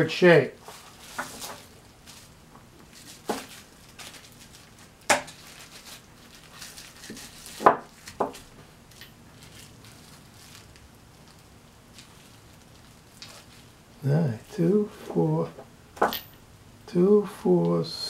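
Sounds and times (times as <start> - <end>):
wrapping crinkling: 0.6 - 13.9.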